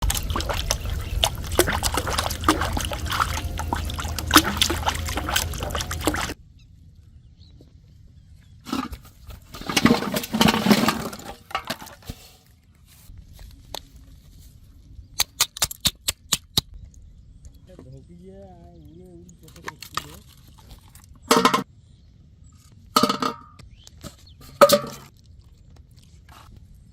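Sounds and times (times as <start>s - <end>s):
water splashing and slapping: 0.0s - 6.4s, 8.7s - 12.3s
low rumble: 0.0s - 8.4s.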